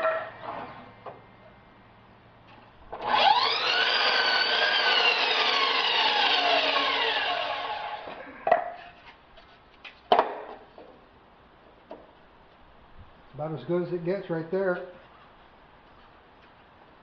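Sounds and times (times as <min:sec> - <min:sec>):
miter saw whining: 0:02.9 - 0:08.2
saw cutting wooden board: 0:02.9 - 0:08.2.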